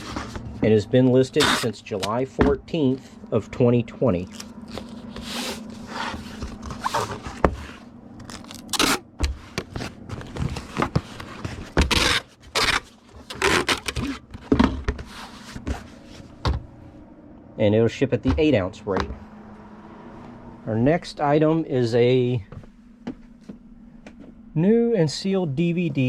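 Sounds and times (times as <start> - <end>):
paper and cardboard rustling: 0.0 - 0.6, 4.2 - 16.4.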